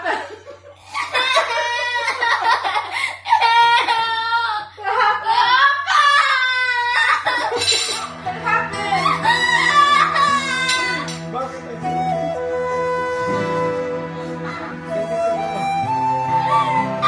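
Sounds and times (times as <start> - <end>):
young child crying: 8.8 - 11.1.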